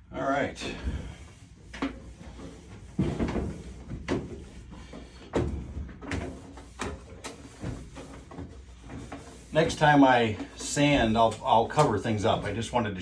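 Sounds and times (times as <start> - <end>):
dull knocks and bumps: 2.8 - 9.3.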